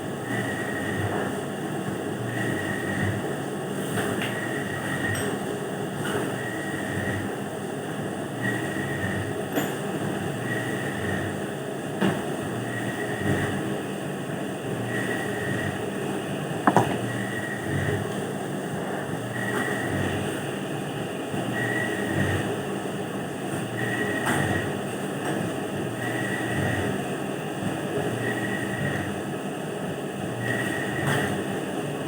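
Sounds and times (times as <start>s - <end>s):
sharp knock: 16.7s - 17.0s.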